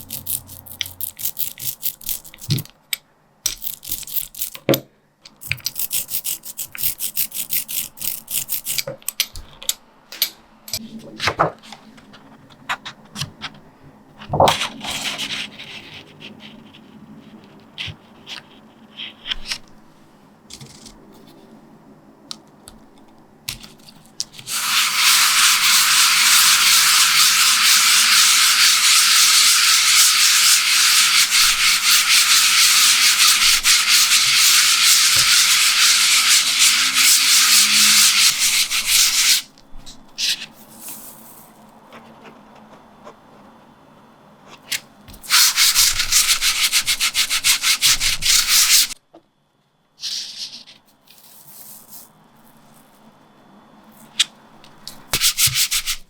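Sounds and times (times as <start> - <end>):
baren rubbing on paper: 24.5 - 39.5, 45.2 - 49.0.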